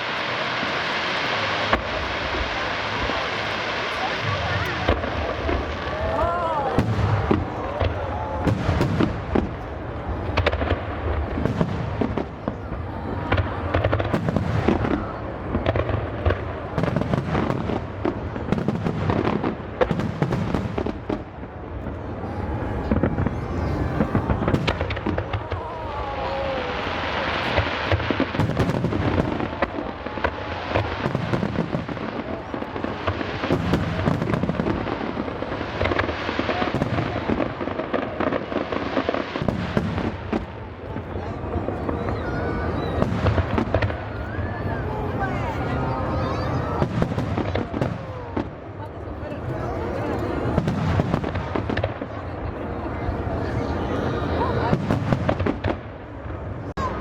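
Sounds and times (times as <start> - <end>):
fireworks bursting: 0.0 - 57.0.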